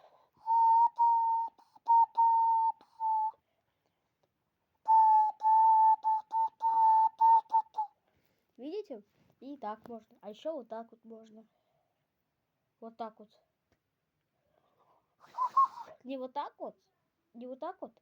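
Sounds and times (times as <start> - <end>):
hand whistle notes: 0.4 - 3.4, 4.9 - 7.9, 15.2 - 15.9.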